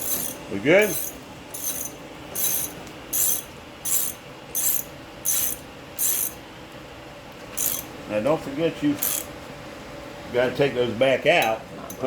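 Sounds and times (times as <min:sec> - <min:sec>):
ratchet wrench clicking: 0:00.0 - 0:06.4, 0:07.6 - 0:07.9, 0:09.0 - 0:09.3.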